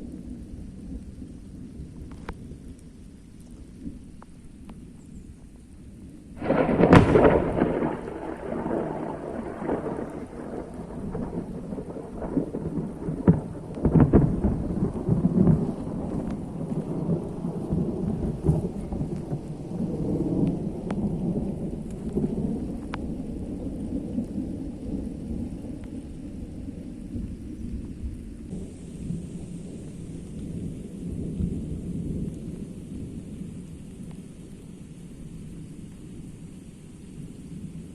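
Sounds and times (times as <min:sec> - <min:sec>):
steady rain: 0:00.0 - 0:37.9
thunder cracks and rumble: 0:06.4 - 0:26.2.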